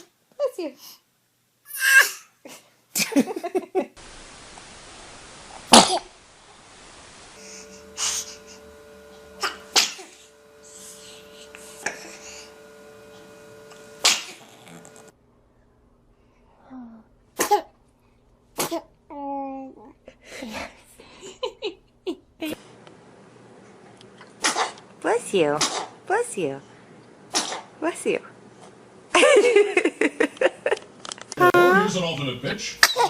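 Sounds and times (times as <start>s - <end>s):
babies sneezing: 1.7s - 2.4s, 17.4s - 17.7s.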